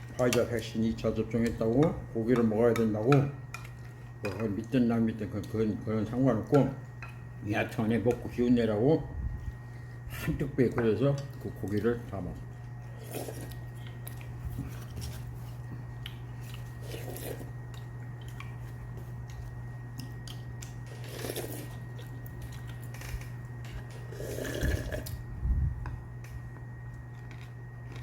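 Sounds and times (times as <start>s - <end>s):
steady low hum: 0.0s - 28.0s
man chewing food: 11.2s - 25.3s, 25.9s - 28.0s.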